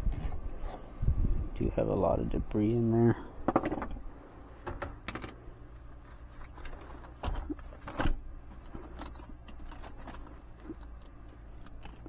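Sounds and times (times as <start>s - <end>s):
steady low hum: 0.0s - 12.0s
metal tools clinking and scraping: 6.1s - 12.0s.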